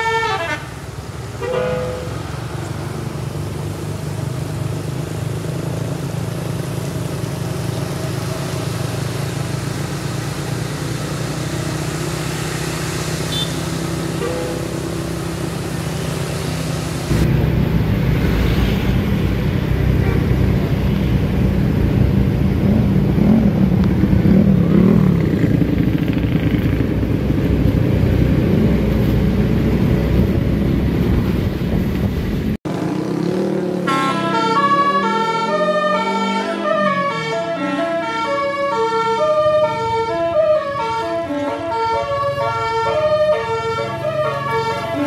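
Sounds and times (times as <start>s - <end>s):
bus multi-tone horn tune: 0.0s - 0.8s, 1.4s - 2.2s, 13.3s - 15.2s, 33.8s - 45.0s
engine and road noise: 0.0s - 45.0s.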